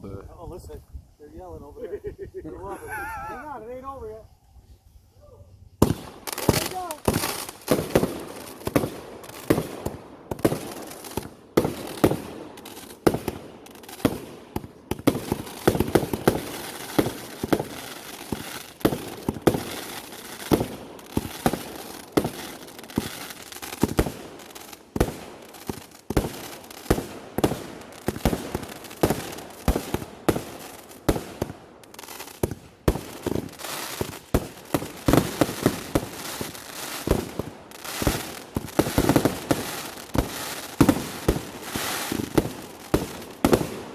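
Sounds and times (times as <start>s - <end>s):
fireworks banging and crackling: 5.7s - 43.9s.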